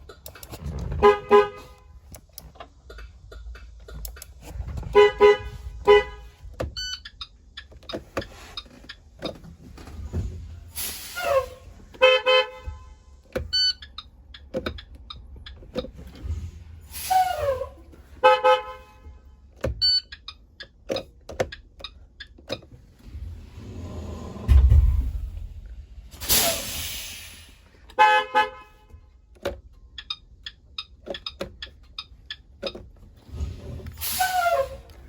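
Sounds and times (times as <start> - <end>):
bus electric horn tooting: 0.8 - 2.2, 4.8 - 6.5, 11.0 - 13.7, 16.9 - 19.6, 27.9 - 29.2, 34.0 - 35.0.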